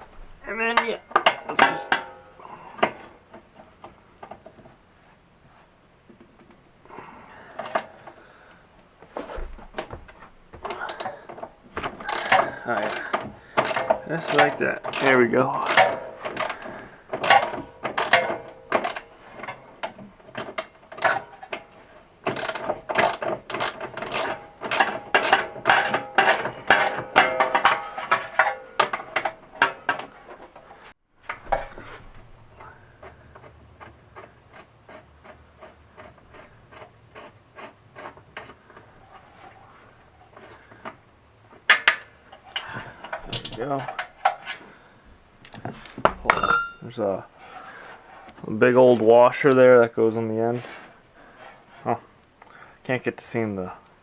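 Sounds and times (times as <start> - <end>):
ratchet wrench clicking: 12.0 - 19.5, 22.3 - 27.6.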